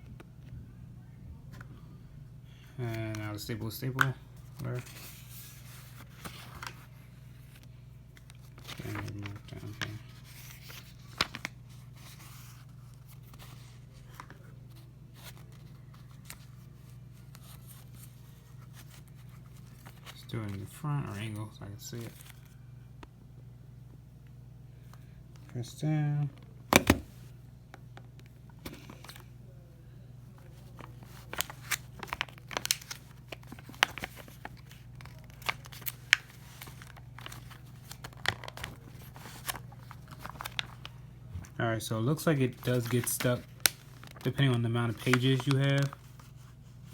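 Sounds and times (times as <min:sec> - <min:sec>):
steady low hum: 0:00.0 - 0:46.9
paper rustling: 0:04.4 - 0:07.6, 0:08.2 - 0:20.7, 0:30.4 - 0:46.9.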